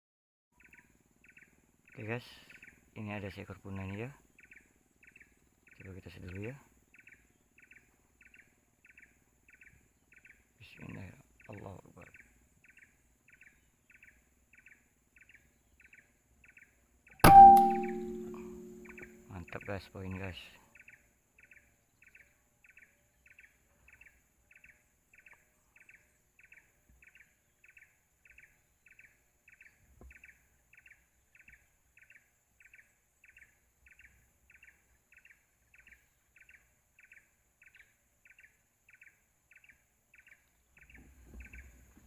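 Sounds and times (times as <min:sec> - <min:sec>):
short chirping call: 0:17.2 - 0:19.5.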